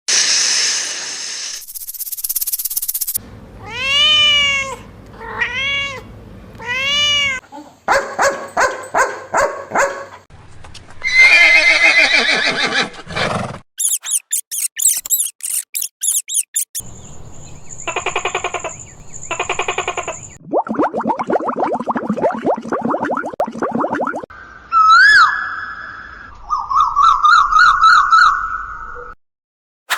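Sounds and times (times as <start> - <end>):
cat meowing: 3.6 - 7.4
horse whinny: 11.0 - 13.6.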